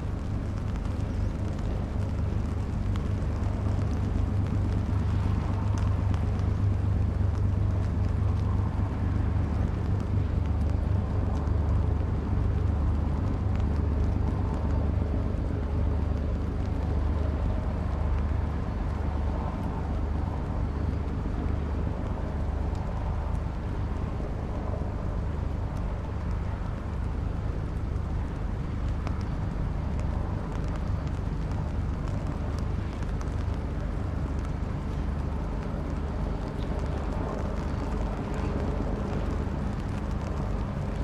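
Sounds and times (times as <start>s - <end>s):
diesel engine low drone: 0.0s - 41.0s.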